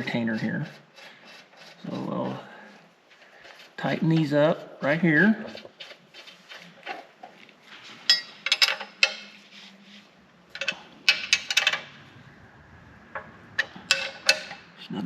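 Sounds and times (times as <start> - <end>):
wrench clicking on bolts: 8.1 - 9.4, 10.6 - 11.9, 13.6 - 14.7.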